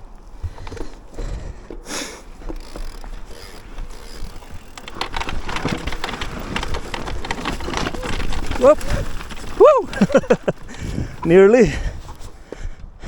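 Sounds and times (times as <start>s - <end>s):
bike tyre noise on dirt: 0.0s - 13.0s
bike clattering and rattling: 0.4s - 12.7s
wind on microphone: 3.9s - 13.0s.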